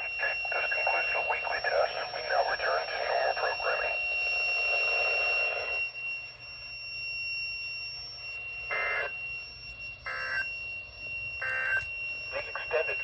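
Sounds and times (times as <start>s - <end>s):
digital data tone bursts: 0.0s - 5.8s, 11.4s - 13.0s
radio hiss: 0.0s - 5.8s, 11.7s - 13.0s
steady high whine: 0.0s - 13.0s.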